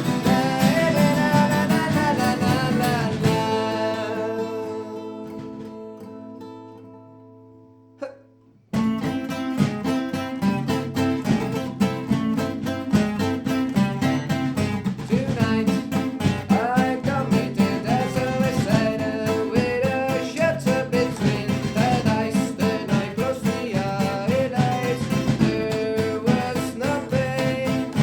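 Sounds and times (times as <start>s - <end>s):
sliding melody line: 0.0s - 5.9s
percussion: 0.0s - 6.5s, 8.7s - 28.0s
strummed acoustic guitars: 0.0s - 28.0s.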